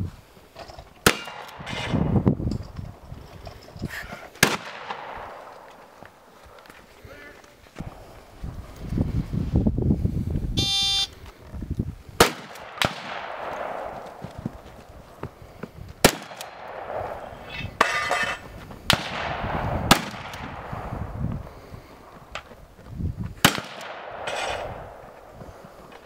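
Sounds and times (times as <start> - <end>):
shotgun shots: 1.0 - 2.1, 4.4 - 5.8, 12.2 - 14.5, 16.0 - 17.9, 18.9 - 21.1, 23.4 - 25.2
short high electronic beep: 10.6 - 11.1.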